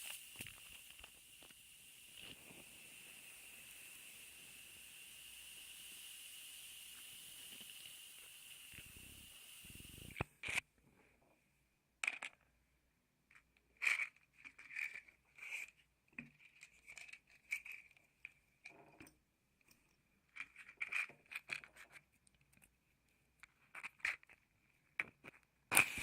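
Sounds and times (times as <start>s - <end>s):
matchbox scrapes and taps: 0.0s - 2.7s, 9.8s - 10.6s, 13.3s - 18.4s, 20.3s - 22.8s, 23.4s - 26.0s.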